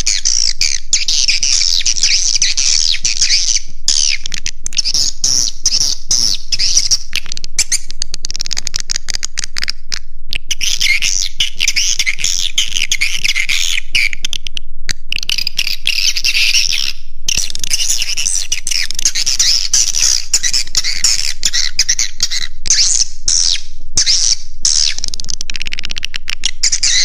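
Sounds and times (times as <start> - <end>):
sharp clicks: 7.1 - 10.5, 14.2 - 15.6, 24.7 - 26.8.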